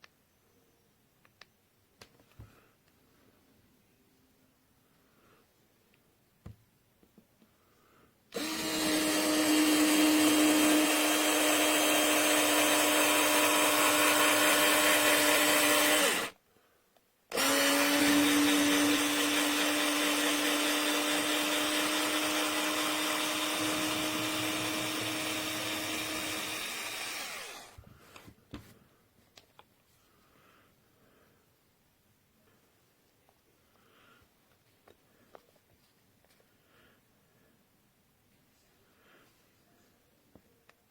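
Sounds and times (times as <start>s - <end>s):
electric screwdriver motor whirring: 8.4s - 16.3s, 17.3s - 27.8s.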